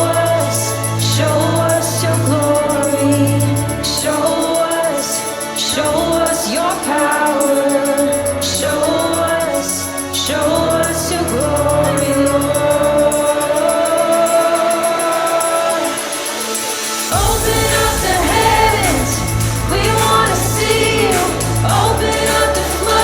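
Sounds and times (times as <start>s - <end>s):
band playing worship song: 0.0s - 23.0s
voices singing long notes: 5.8s - 23.0s.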